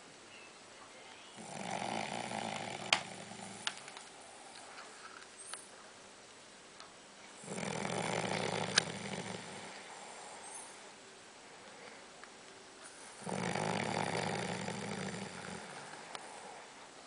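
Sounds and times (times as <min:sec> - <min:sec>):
man snoring: 0:01.4 - 0:03.7, 0:07.4 - 0:09.8, 0:13.2 - 0:16.5.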